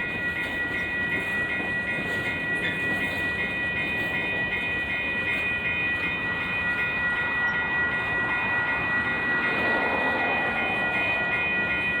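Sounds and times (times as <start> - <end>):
train wheels rumbling on rail: 0.0 - 12.0
high-pitched whine: 5.4 - 12.0.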